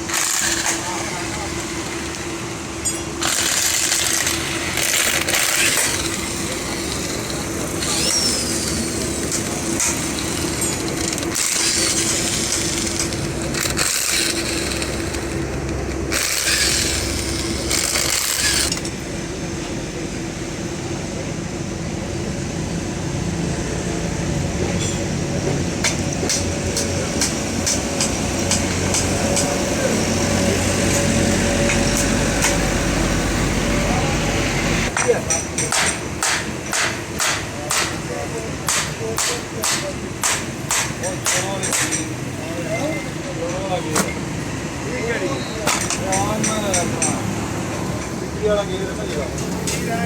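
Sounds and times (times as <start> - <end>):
truck engine whine: 0.0 - 37.2.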